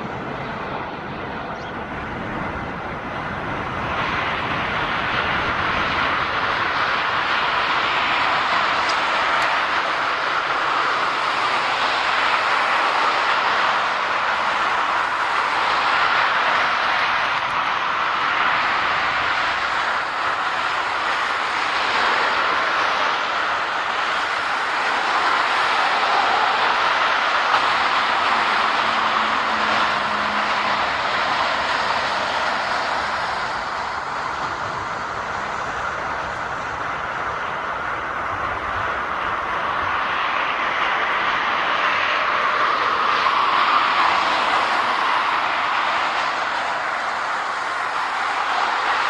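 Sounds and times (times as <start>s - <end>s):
jet engine roar: 0.0s - 49.0s.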